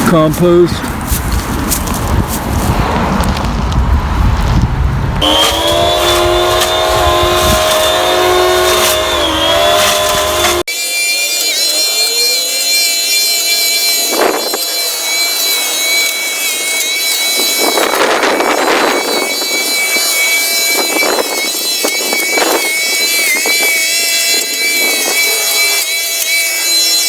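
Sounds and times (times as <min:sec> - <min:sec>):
blades crunching through foliage: 0:00.3 - 0:03.5, 0:05.2 - 0:10.7
hedge trimmer motor whine: 0:05.2 - 0:27.0.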